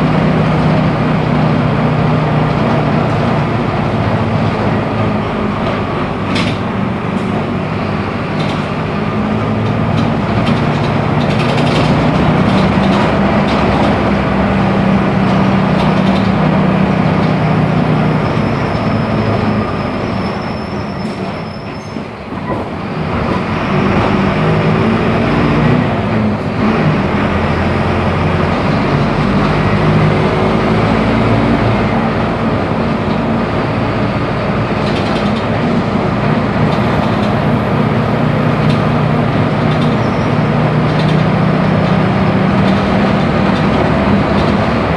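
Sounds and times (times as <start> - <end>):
bus diesel engine running: 0.0 - 44.9.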